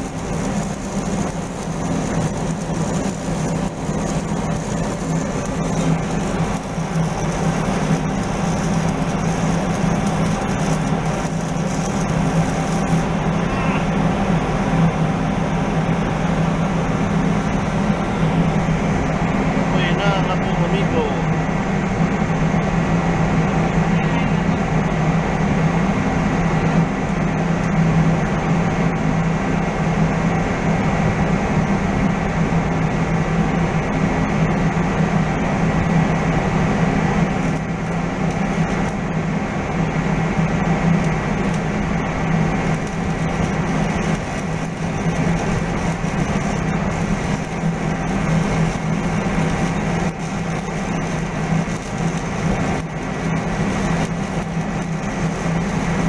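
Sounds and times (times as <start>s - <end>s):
machinery drone with high tone: 0.0s - 14.5s, 23.6s - 24.9s, 35.4s - 56.0s.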